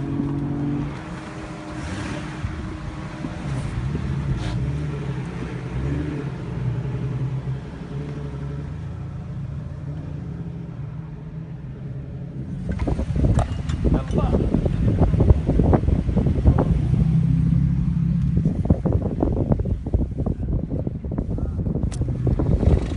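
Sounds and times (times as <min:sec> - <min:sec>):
vehicle engine revving while driving: 0:00.0 - 0:20.3, 0:21.1 - 0:22.9.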